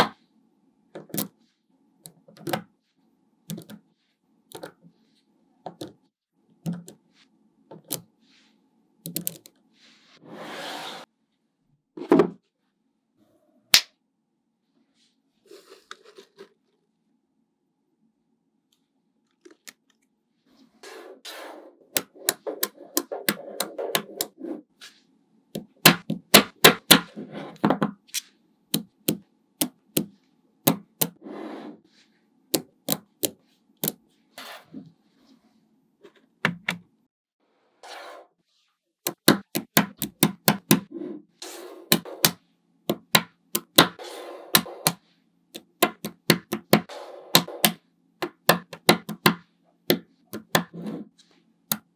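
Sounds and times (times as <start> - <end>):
magnetic balls clicking together: 9.1 - 9.5, 22.0 - 24.3, 39.1 - 40.9, 41.9 - 45.0, 45.6 - 49.4, 50.4 - 50.7.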